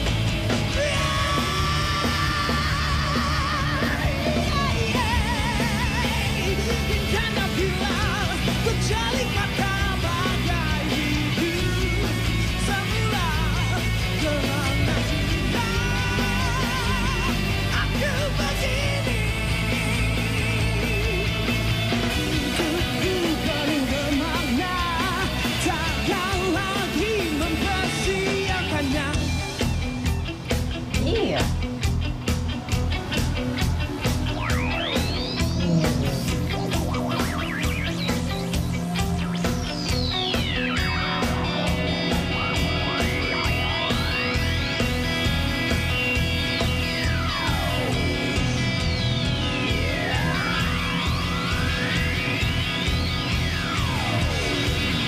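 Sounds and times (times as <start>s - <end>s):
rock guitar and drums: 0.0s - 55.0s
man singing: 0.7s - 21.2s, 22.4s - 29.2s, 35.0s - 37.0s.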